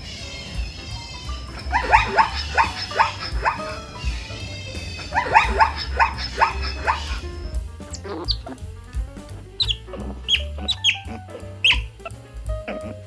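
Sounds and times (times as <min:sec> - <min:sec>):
dog yapping: 0:01.5 - 0:07.2, 0:09.6 - 0:12.0.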